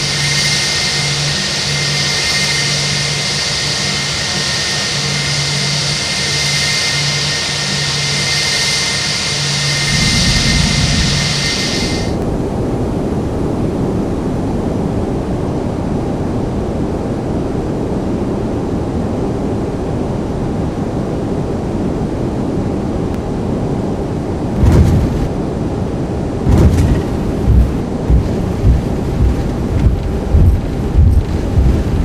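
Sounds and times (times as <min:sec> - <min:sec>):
airplane landing rumble: 0:00.0 - 0:14.0, 0:23.8 - 0:32.0
heavy low thumps: 0:09.9 - 0:11.5, 0:26.5 - 0:32.0.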